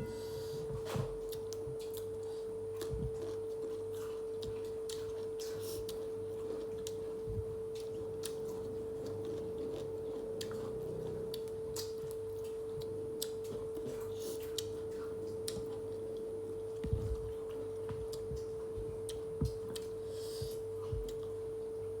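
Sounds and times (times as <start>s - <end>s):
steady hum: 0.0s - 22.0s
eating clicks and smacks: 2.8s - 21.3s
soft low thumps: 16.8s - 19.8s, 20.9s - 21.2s.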